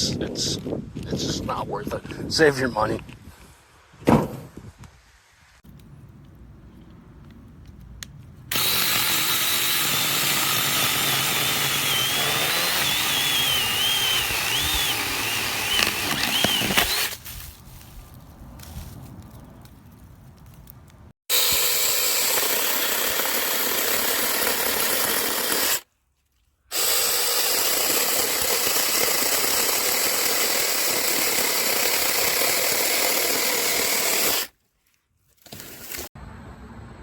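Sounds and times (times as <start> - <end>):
mini chainsaw running: 8.5 - 17.2, 21.3 - 25.8, 26.7 - 34.5.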